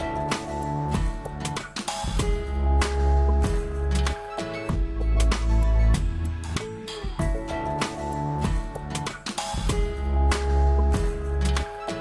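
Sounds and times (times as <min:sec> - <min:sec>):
music with drums and bass: 0:00.0 - 0:12.0.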